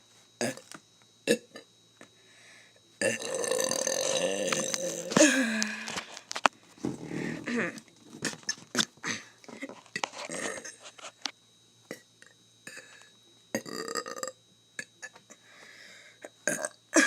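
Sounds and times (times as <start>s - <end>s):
person burping: 0.4s - 0.7s, 1.3s - 1.7s, 3.0s - 5.9s, 6.9s - 10.8s, 11.9s - 12.9s, 13.6s - 15.2s, 16.4s - 17.0s.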